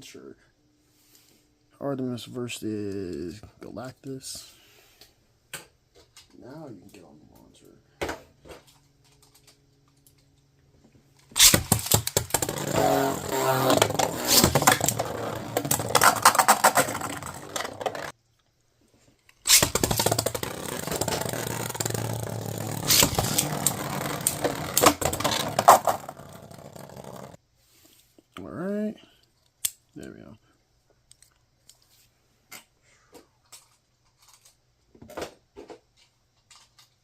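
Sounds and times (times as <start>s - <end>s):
spinning tops whirring and clattering: 11.4s - 18.1s, 19.5s - 27.4s.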